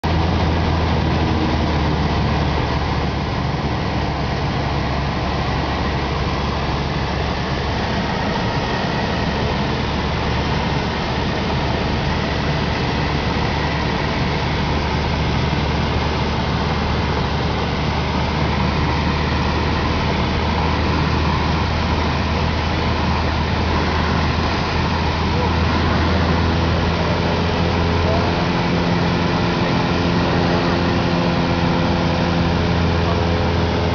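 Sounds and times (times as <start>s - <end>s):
engine running: 0.0s - 33.9s.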